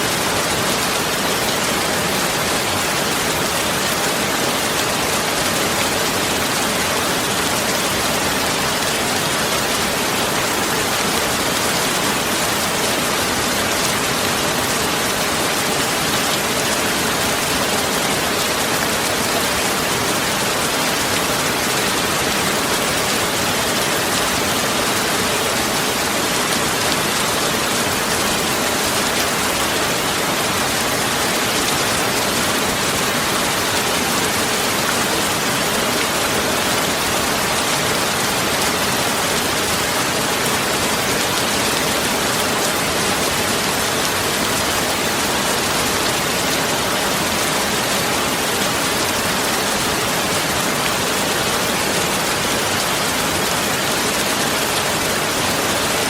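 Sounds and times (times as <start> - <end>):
steady rain-like hiss: 0.0 - 56.0.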